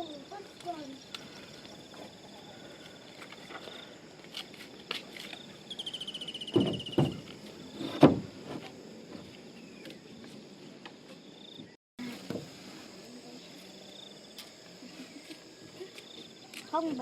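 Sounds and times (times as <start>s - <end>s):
insects buzzing and trilling: 0.0s - 17.0s
dull knocks: 6.5s - 8.6s.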